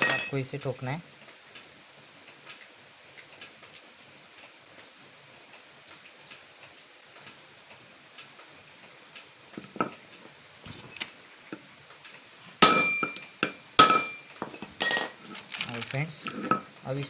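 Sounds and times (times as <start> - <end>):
ringing metal clang: 0.0 - 0.5, 12.6 - 15.2.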